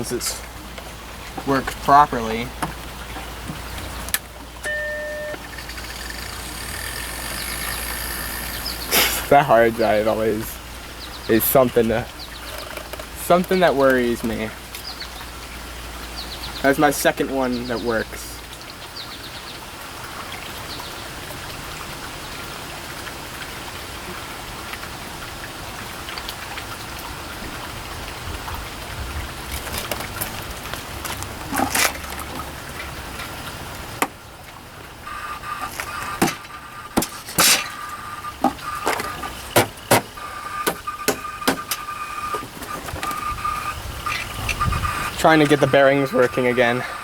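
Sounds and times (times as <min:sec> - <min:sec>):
hard drive whirring: 0:04.5 - 0:11.6, 0:35.0 - 0:47.0
irregular clicks and knocks: 0:12.3 - 0:14.9, 0:35.1 - 0:44.6
high whine: 0:35.0 - 0:47.0.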